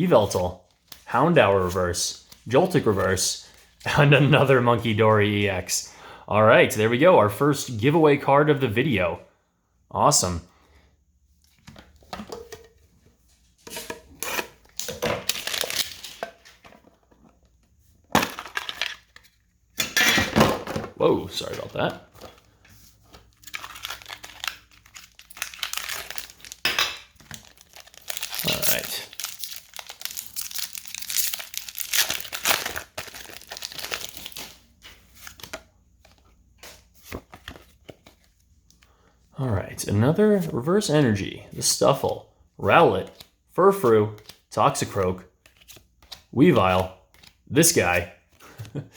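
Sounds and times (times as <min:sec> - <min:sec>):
foil wrappers crinkling and tearing: 0:14.6 - 0:16.2, 0:22.4 - 0:35.6.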